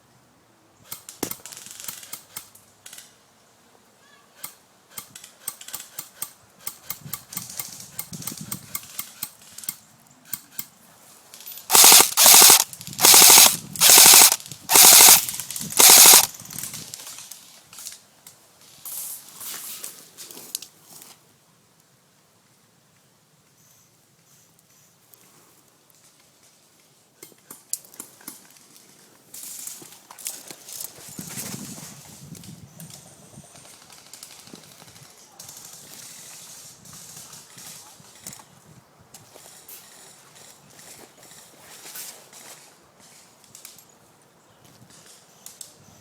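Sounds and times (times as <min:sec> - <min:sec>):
airsoft gun shots: 0:11.7 - 0:16.3
full-auto airsoft bursts: 0:11.7 - 0:16.3.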